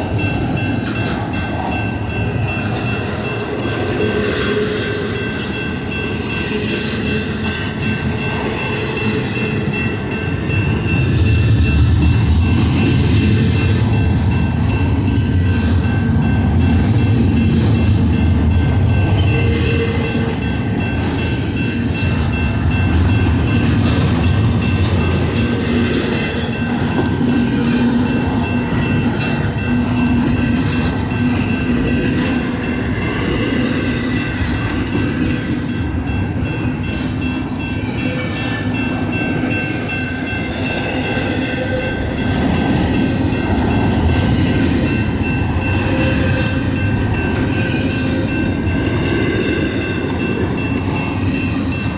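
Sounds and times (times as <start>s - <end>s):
freight train wheels on rail: 0.0s - 51.9s.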